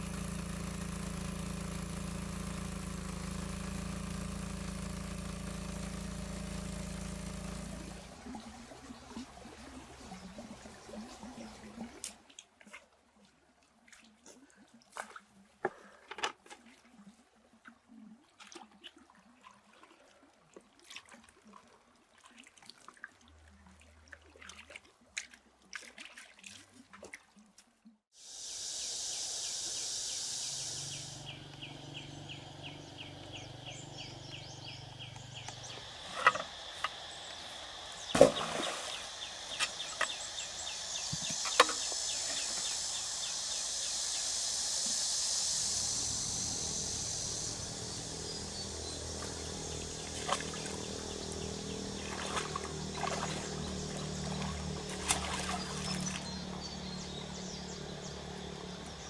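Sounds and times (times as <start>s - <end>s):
low steady hum: 0.0s - 12.2s, 28.8s - 59.0s
water splashes: 7.8s - 27.8s, 35.8s - 45.0s, 46.4s - 57.4s.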